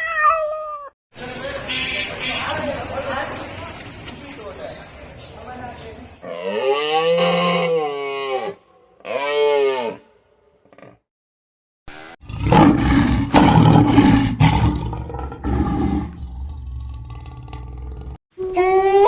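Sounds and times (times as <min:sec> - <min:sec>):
mooing call: 0:06.2 - 0:10.0
lion roaring: 0:12.2 - 0:18.2.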